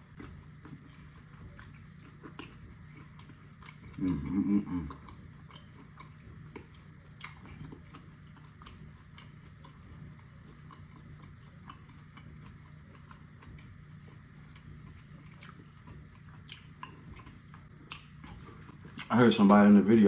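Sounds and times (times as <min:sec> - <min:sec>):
chewing with wet mouth clicks: 0:00.0 - 0:19.6
faint low hum: 0:00.0 - 0:20.0
lip smacks: 0:00.1 - 0:19.2.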